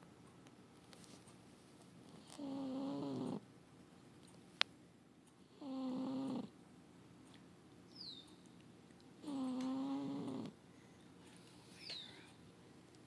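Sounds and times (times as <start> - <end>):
cat snoring: 2.2 - 3.4, 5.5 - 6.5, 9.2 - 10.6.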